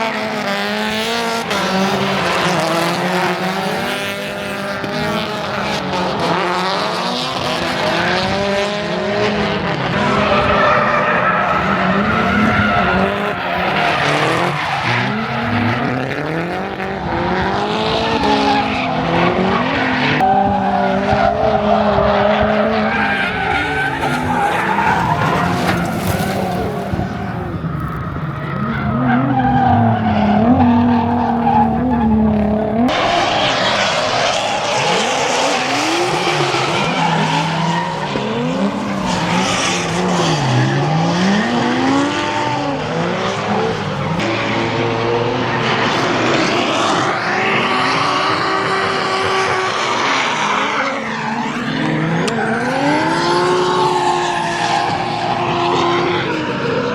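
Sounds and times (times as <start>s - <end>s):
car engines revving hard: 0.0s - 56.9s
tyres screeching: 22.4s - 32.1s.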